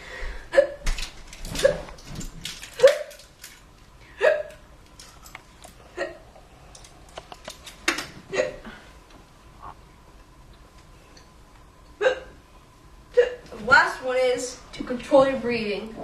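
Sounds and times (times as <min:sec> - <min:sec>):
person hiccupping: 0:04.2 - 0:04.6, 0:05.9 - 0:06.3, 0:12.0 - 0:12.4.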